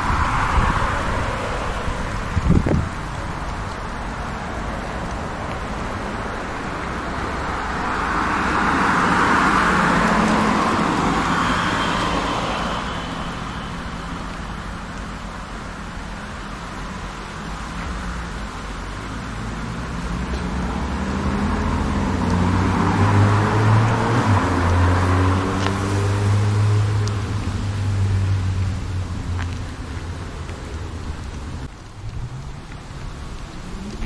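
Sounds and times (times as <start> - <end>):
street traffic: 0.0 - 34.0
vehicle passing close: 5.2 - 15.3, 17.9 - 29.5.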